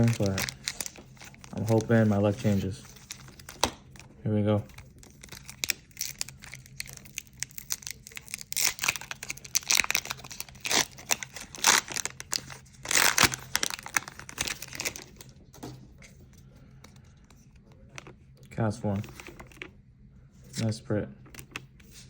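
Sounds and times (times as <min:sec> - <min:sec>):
foil wrapper ripping: 0:00.0 - 0:03.7, 0:04.8 - 0:15.3
foil wrapper crinkling: 0:00.0 - 0:04.1, 0:04.7 - 0:15.3.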